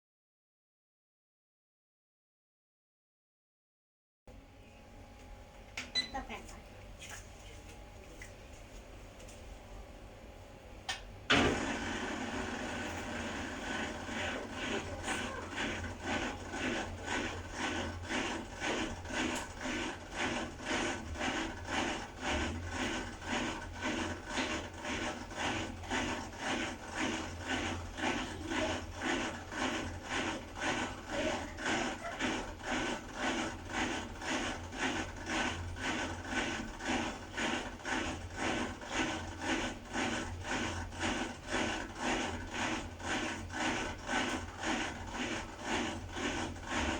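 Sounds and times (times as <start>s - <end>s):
washer-dryer rubbing and scraping: 11.3s - 46.9s.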